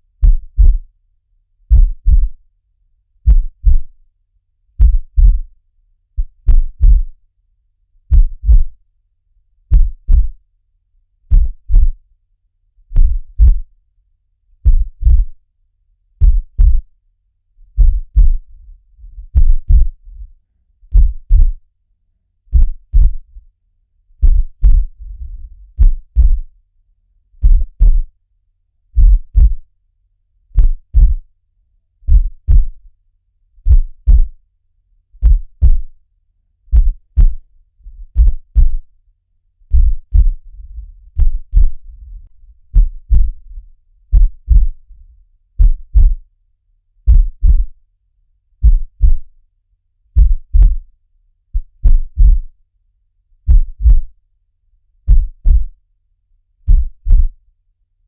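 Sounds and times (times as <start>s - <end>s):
faint low rumble: 0.0s - 1.0s, 1.6s - 2.5s, 3.2s - 4.0s, 4.7s - 5.6s, 6.2s - 7.2s, 8.0s - 8.9s, 9.6s - 10.5s, 11.3s - 12.1s, 12.9s - 13.8s, 14.6s - 15.4s, 16.2s - 17.0s, 17.6s - 21.8s, 22.5s - 28.2s, 28.9s - 29.8s, 30.5s - 31.4s, 32.0s - 33.0s, 33.6s - 34.5s, 35.2s - 36.0s, 36.6s - 46.3s, 47.0s - 47.8s, 48.6s - 49.4s, 50.1s - 52.6s, 53.4s - 54.2s, 55.0s - 55.8s, 56.7s - 57.4s
heartbeat lub-dub: 0.2s - 0.9s, 1.7s - 2.4s, 3.2s - 4.0s, 4.8s - 5.5s, 6.2s - 7.1s, 8.1s - 8.8s, 9.7s - 10.4s, 11.3s - 12.0s, 13.0s - 13.7s, 14.6s - 15.4s, 16.2s - 16.9s, 17.7s - 20.3s, 20.9s - 21.6s, 22.5s - 23.4s, 24.2s - 26.5s, 27.4s - 28.1s, 29.0s - 29.7s, 30.6s - 31.3s, 32.1s - 32.9s, 33.6s - 34.4s, 35.2s - 35.9s, 36.7s - 38.9s, 39.7s - 45.0s, 45.6s - 46.2s, 47.1s - 47.8s, 48.6s - 49.3s, 50.2s - 50.9s, 51.6s - 52.6s, 53.5s - 54.2s, 55.1s - 55.8s, 56.7s - 57.4s.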